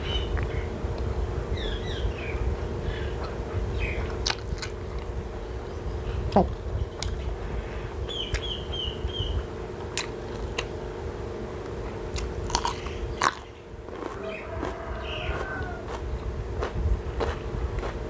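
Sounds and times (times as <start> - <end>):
person chewing crunchy food: 4.0 - 5.2, 9.9 - 10.8, 11.6 - 18.0.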